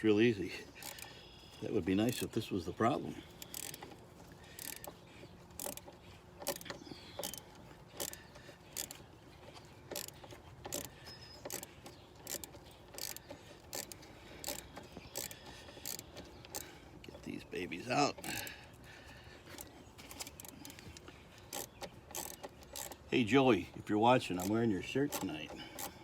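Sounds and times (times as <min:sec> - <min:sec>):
ratchet wrench clicking: 0:00.7 - 0:01.2, 0:02.0 - 0:02.3, 0:03.3 - 0:09.0, 0:09.9 - 0:16.7, 0:19.6 - 0:20.8, 0:21.5 - 0:23.1, 0:24.2 - 0:26.0.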